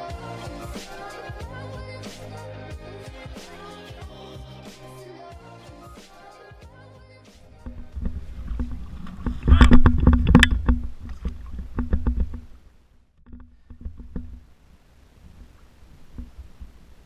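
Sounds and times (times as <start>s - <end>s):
water splashing: 7.6s - 12.6s.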